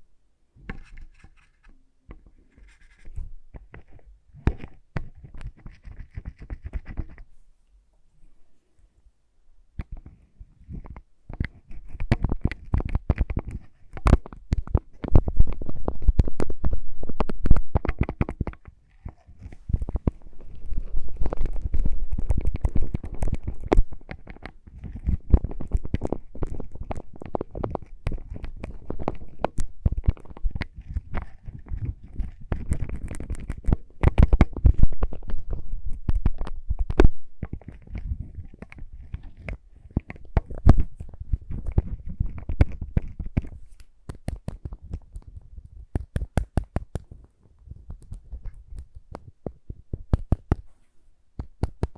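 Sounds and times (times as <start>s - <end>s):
lip balm clicks and crackles: 19.7s - 47.2s, 50.0s - 50.7s, 51.4s - 51.9s.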